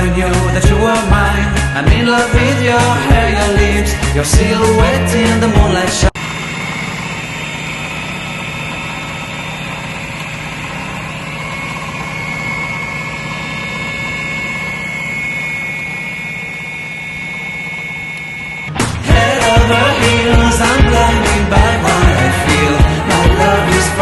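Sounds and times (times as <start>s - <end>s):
table saw motor hum: 6.0s - 19.0s
thin high whine: 6.2s - 20.7s.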